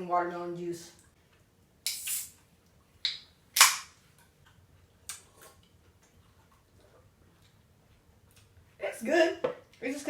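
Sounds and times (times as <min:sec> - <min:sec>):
bottle hissing and popping: 0:01.8 - 0:02.4.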